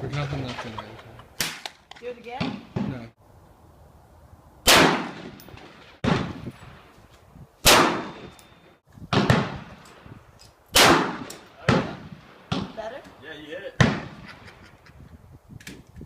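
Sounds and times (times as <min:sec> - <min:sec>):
gunshots with echo: 0:04.7 - 0:06.4, 0:07.6 - 0:08.3, 0:10.8 - 0:12.8.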